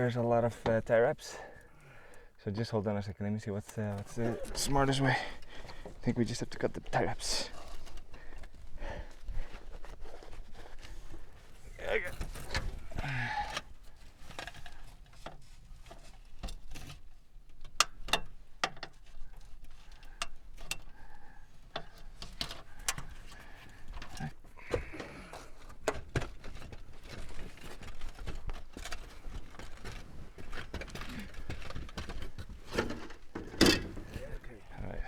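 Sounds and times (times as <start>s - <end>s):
tools clicking and knocking: 16.4s - 21.0s.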